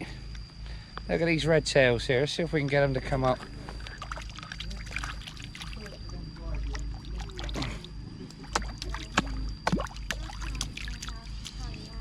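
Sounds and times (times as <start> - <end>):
fish splashing at water surface: 3.9 - 6.0, 6.6 - 11.7.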